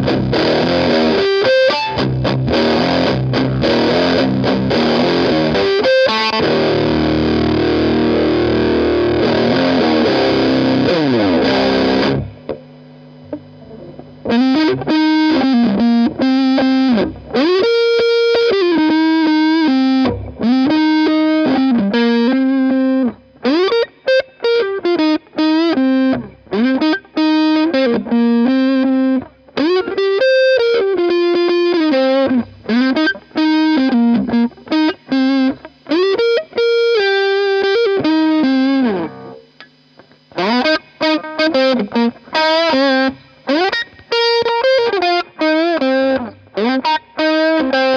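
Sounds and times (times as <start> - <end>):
distorted electric guitar chords: 0.0 - 47.9
electric guitar riff with bends: 0.0 - 47.9.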